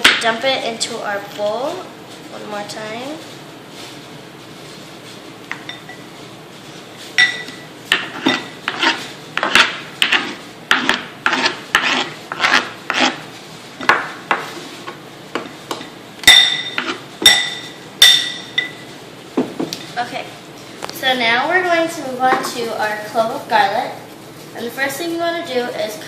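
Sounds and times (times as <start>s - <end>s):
knife scraping cutting board: 8.0s - 14.9s, 16.8s - 17.0s.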